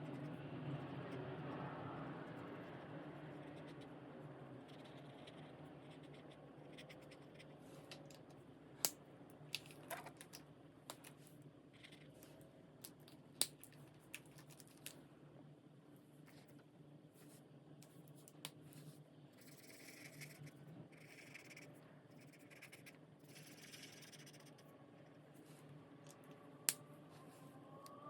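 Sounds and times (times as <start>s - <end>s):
low steady hum: 0.0s - 28.0s
marker scratching on paper: 4.7s - 7.5s, 19.4s - 24.6s.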